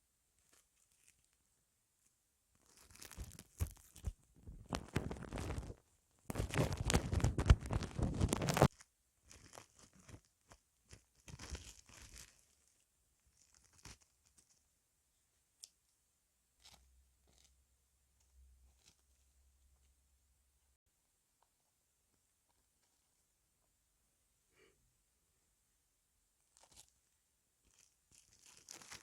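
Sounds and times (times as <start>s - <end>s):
rubbing and scratching on microphone: 2.6s - 12.7s.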